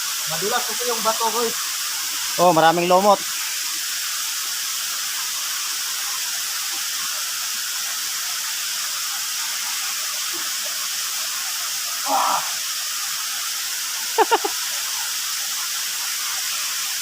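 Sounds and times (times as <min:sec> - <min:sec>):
waterfall rushing: 0:00.0 - 0:03.3, 0:11.7 - 0:13.3, 0:13.9 - 0:15.0.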